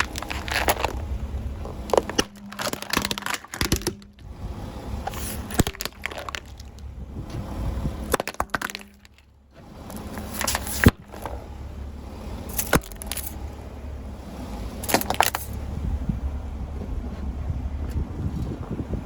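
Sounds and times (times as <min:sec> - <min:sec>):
tyres crushing objects: 0:00.0 - 0:04.3, 0:04.9 - 0:06.9, 0:07.9 - 0:11.6, 0:12.4 - 0:13.5, 0:14.8 - 0:15.6
low car rumble: 0:00.0 - 0:19.0.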